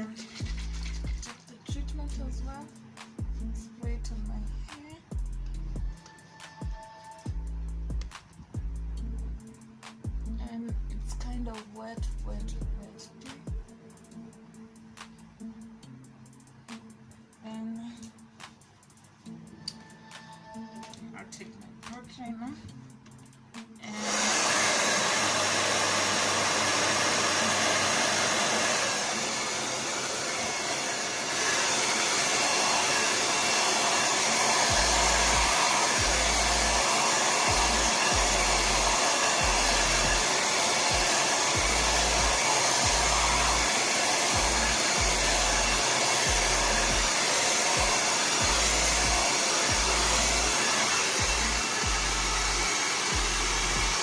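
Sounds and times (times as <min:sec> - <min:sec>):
hair dryer running: 0:00.0 - 0:01.7, 0:23.8 - 0:54.0.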